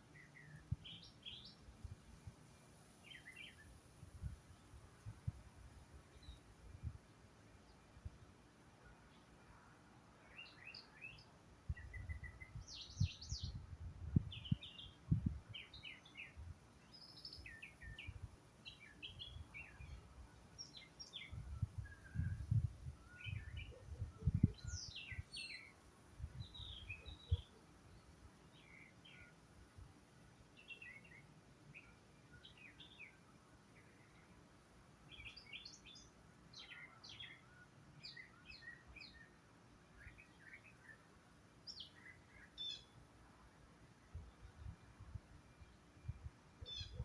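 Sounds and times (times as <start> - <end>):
songbirds chirping and calling: 0.0 - 8.0, 8.6 - 47.0.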